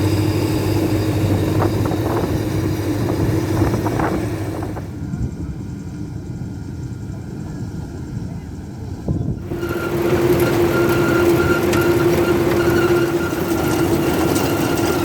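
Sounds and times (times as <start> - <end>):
tractor engine running: 0.0 - 7.4, 8.7 - 15.0.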